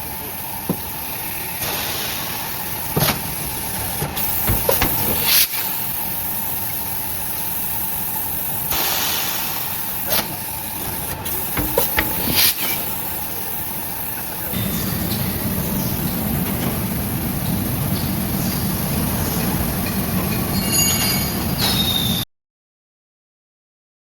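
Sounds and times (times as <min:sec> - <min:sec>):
compressed air hissing: 0:00.0 - 0:20.6
steady machine noise: 0:00.0 - 0:21.6
machine parts clicking and knocking: 0:03.8 - 0:06.8, 0:07.7 - 0:14.5.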